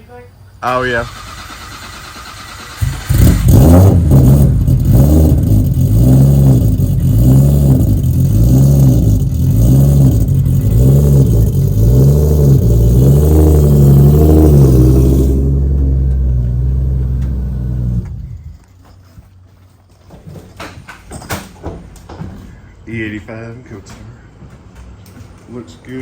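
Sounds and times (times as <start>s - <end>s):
car engine starting and running: 0.8s - 18.8s.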